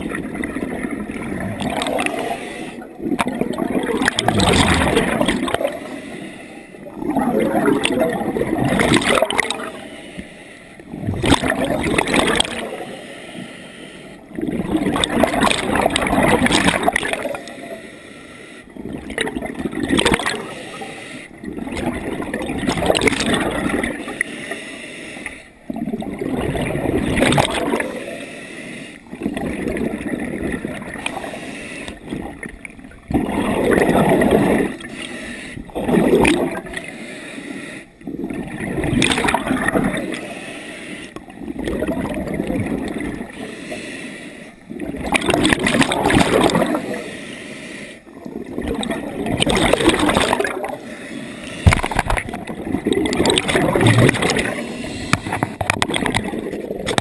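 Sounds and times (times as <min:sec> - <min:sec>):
exhaled bubbles gurgling: 0:00.0 - 0:13.1, 0:14.2 - 0:17.8, 0:18.7 - 0:24.3, 0:25.3 - 0:28.2, 0:29.0 - 0:36.9, 0:37.9 - 0:40.4, 0:41.1 - 0:43.5, 0:44.5 - 0:47.2, 0:48.0 - 0:57.0
diver inhaling through regulator: 0:04.3 - 0:06.8, 0:31.0 - 0:32.0, 0:34.7 - 0:35.7, 0:43.4 - 0:44.6, 0:53.7 - 0:55.7.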